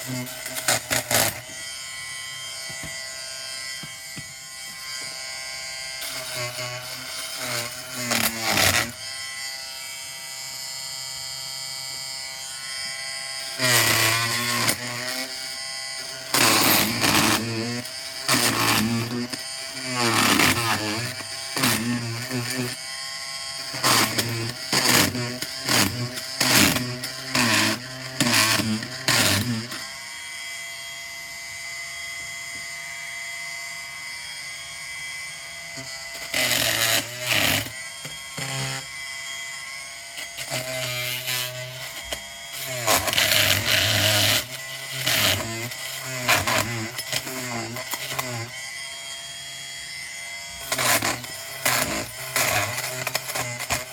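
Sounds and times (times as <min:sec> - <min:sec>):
blade cutting fabric: 0:00.0 - 0:53.9
oscillating multi-tool buzzing: 0:00.0 - 0:53.9.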